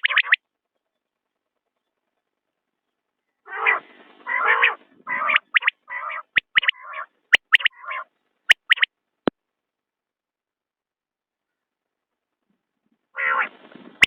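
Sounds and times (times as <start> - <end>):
quail calling: 0.0 - 0.4, 3.5 - 8.9, 13.2 - 13.6.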